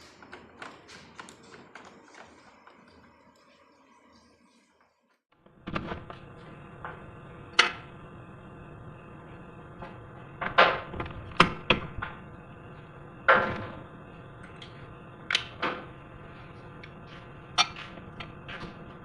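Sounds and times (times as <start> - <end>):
steady hum: 5.4 - 19.0.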